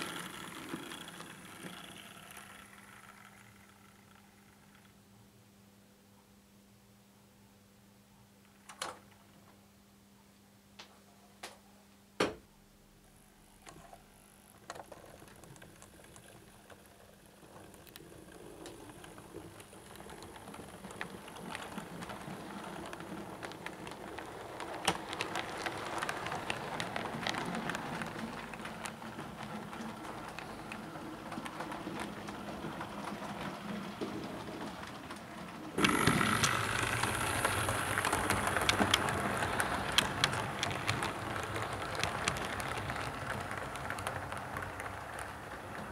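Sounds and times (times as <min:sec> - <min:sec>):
model train motor whirring: 0:00.0 - 0:04.9, 0:13.8 - 0:35.2, 0:35.8 - 0:45.8
wheels clicking over rail joints: 0:00.0 - 0:05.0, 0:14.5 - 0:45.9.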